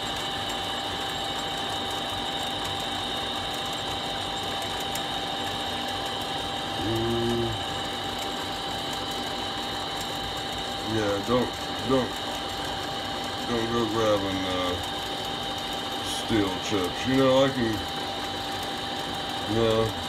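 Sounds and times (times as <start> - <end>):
small motor whirring: 0.0 - 20.0
person grunting: 6.8 - 7.6.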